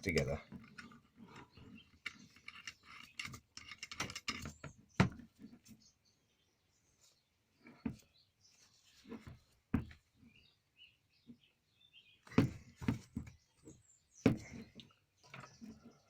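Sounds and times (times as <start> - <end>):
metal parts knocking and clinking: 1.6 - 4.8.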